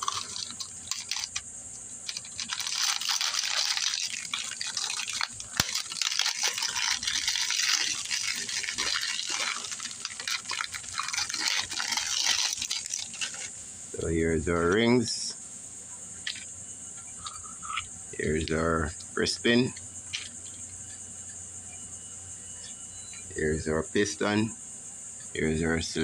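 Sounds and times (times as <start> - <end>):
plastic packaging crinkling: 0.0 - 13.6, 20.1 - 20.7.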